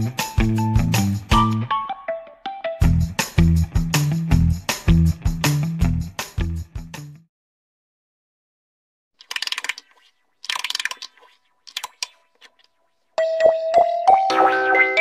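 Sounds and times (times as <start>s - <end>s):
plucked guitar music: 0.0s - 3.2s
rapid mechanical clicking: 9.2s - 11.1s.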